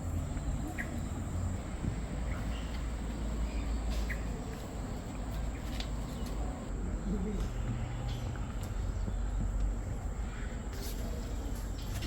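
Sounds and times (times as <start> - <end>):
bird chirps: 0.3 - 1.4, 2.2 - 4.4.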